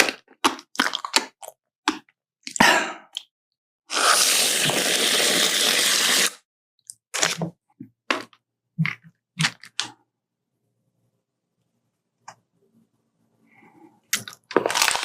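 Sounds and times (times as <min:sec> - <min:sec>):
chocolate crunching and chewing: 0:00.0 - 0:02.1, 0:14.1 - 0:15.0
wrapper crinkling and tearing: 0:14.2 - 0:15.0.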